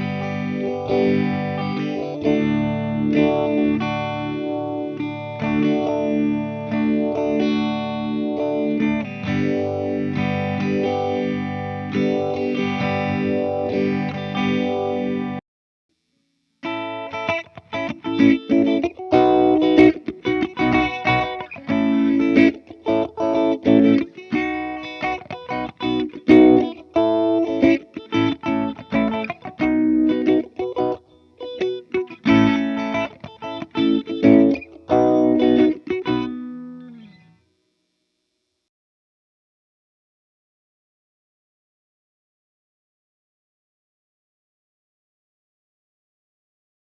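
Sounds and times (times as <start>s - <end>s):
electric guitar strummed chords: 0.0s - 15.4s, 16.6s - 37.4s
funk guitar chord stabs: 16.6s - 37.4s.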